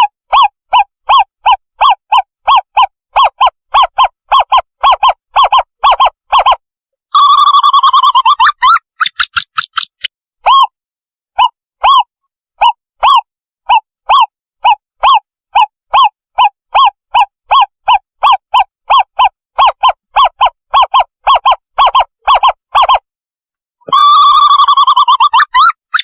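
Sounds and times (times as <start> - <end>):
wavering owl call: 0.3 - 6.6, 11.4 - 23.0, 23.9 - 26.0.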